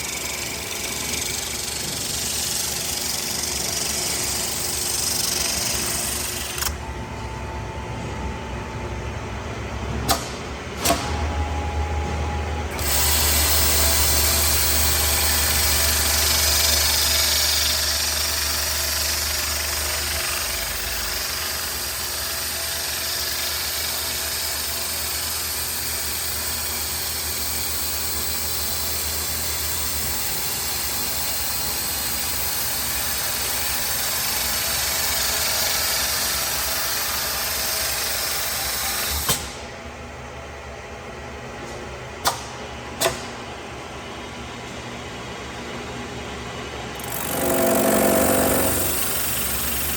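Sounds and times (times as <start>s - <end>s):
metal spinning lathe hissing: 0.0s - 6.5s.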